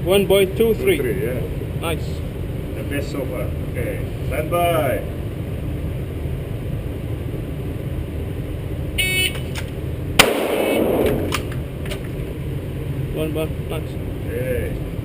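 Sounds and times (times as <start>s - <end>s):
faint sharp cracks: 9.3s - 12.2s
pistol shot: 10.2s - 12.0s.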